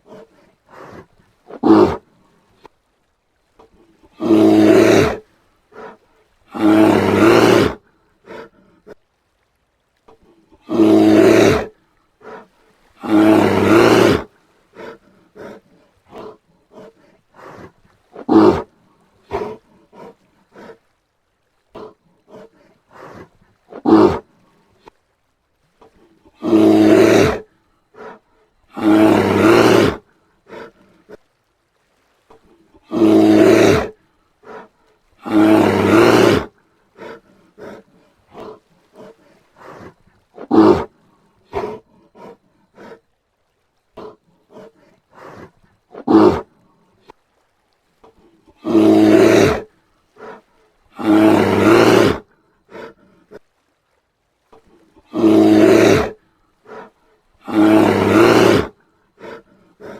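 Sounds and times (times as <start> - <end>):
bear grunting: 0.0 - 2.0, 4.0 - 9.0, 10.6 - 20.9, 21.7 - 24.2, 26.2 - 31.2, 32.7 - 43.0, 44.0 - 46.6, 48.4 - 53.4, 55.0 - 59.9
bear roaring: 0.0 - 2.0, 4.1 - 9.0, 10.6 - 20.8, 21.7 - 24.2, 26.2 - 31.2, 32.8 - 43.0, 44.0 - 46.6, 48.6 - 53.4, 55.0 - 59.9.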